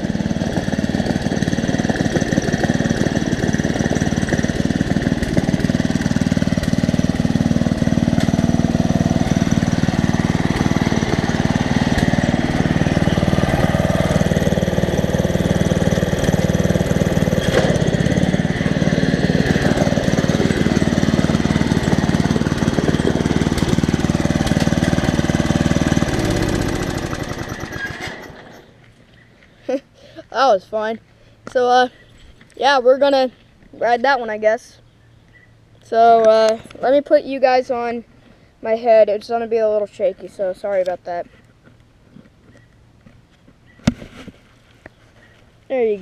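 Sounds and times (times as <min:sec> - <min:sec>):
riding lawn mower engine running: 0:00.0 - 0:46.0.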